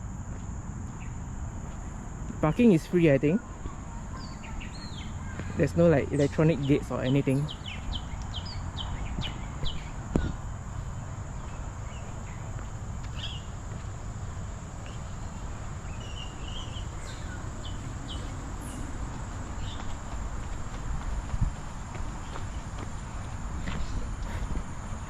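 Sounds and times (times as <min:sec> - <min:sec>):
insects high-pitched drone: 0:00.0 - 0:25.0
bird chirps: 0:02.5 - 0:13.6, 0:14.8 - 0:20.0.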